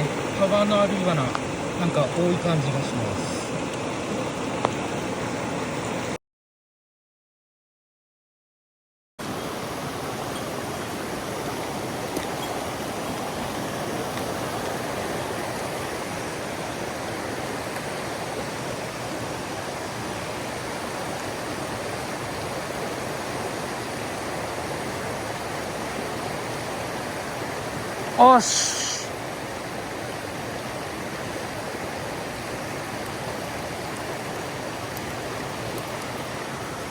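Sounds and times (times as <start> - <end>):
stream water rushing: 0.0 - 6.2, 9.2 - 36.9.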